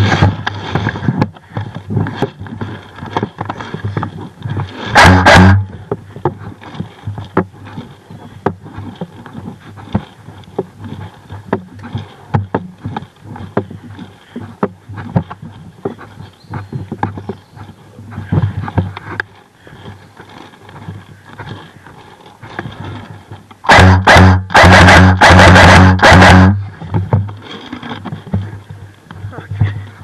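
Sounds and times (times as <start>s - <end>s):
footsteps knocking and clicking: 0.0s - 30.0s
low steady hum: 4.9s - 5.9s, 10.2s - 30.0s.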